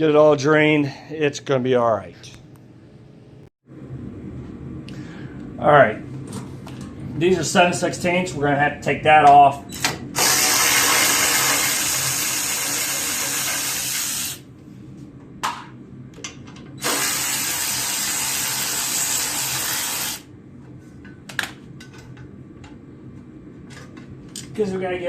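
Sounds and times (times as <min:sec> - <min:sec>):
power tool loosening bolts: 0:09.8 - 0:14.4, 0:16.8 - 0:20.2.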